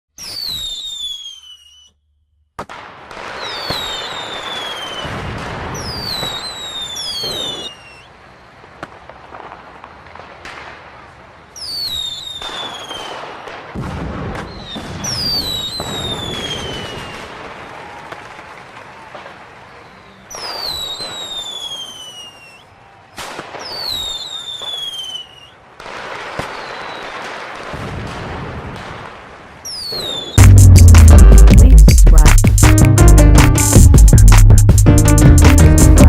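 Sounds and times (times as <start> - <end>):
fireworks crackling: 0.1 - 1.9, 2.6 - 36.0
falling firework whistles: 0.1 - 2.0, 3.2 - 8.2, 11.5 - 13.4, 14.3 - 25.6, 26.2 - 27.6, 29.6 - 30.4
firework bang: 2.6 - 7.8, 11.9 - 18.4, 25.8 - 29.2.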